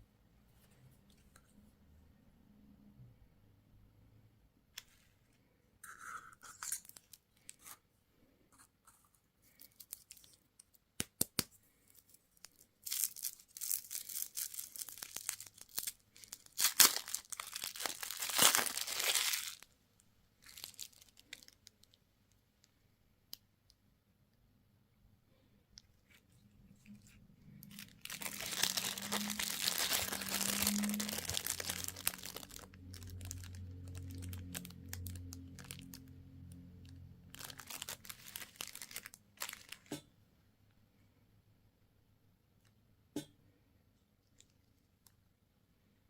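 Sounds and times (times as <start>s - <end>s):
candy wrapper crinkling and tearing: 5.8s - 7.8s, 8.9s - 19.7s, 20.4s - 22.4s, 25.9s - 39.9s
wrapper snapping: 9.5s - 19.7s, 20.4s - 22.0s, 27.0s - 36.1s, 36.8s - 39.9s.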